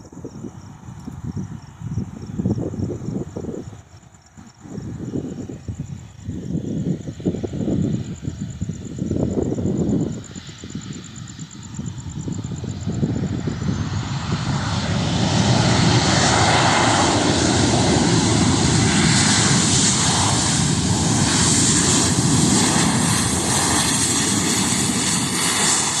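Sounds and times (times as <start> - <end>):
airliner engine roar: 0.0 - 26.0
thin engine whine: 6.4 - 26.0.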